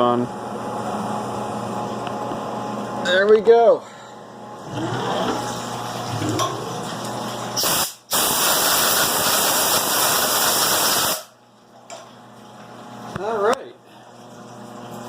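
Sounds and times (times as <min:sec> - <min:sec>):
loud steady spraying hiss: 0:07.6 - 0:11.2.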